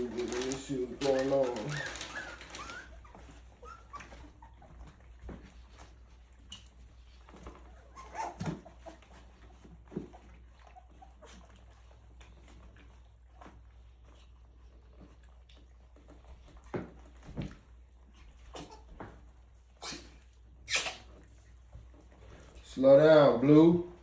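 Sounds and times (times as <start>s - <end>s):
puppies whimpering and squeaking: 0.0s - 22.5s
puppy crying: 1.0s - 5.0s, 7.7s - 9.0s.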